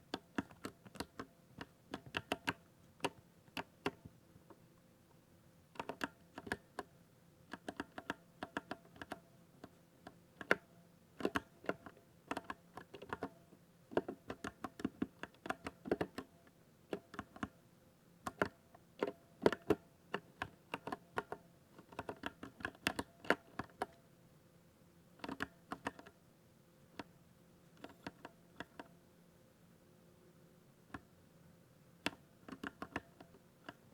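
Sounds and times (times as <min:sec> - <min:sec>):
mechanical keyboard typing: 0:00.1 - 0:04.0, 0:05.8 - 0:06.9, 0:07.5 - 0:09.2, 0:11.2 - 0:13.4, 0:14.0 - 0:16.3, 0:18.3 - 0:23.9, 0:25.2 - 0:26.1, 0:32.0 - 0:33.8.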